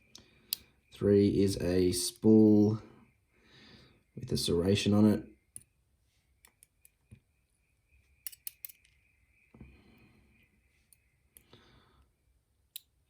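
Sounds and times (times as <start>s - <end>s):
metal lock pins clicking: 8.2s - 9.0s.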